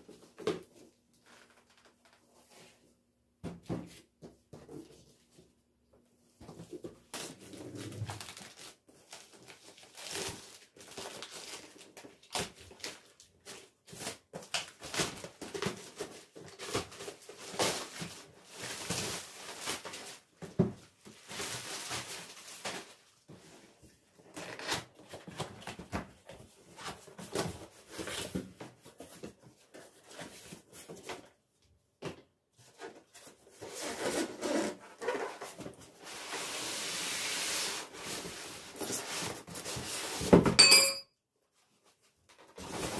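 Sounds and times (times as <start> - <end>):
household things being handled: 37.5 - 41.0.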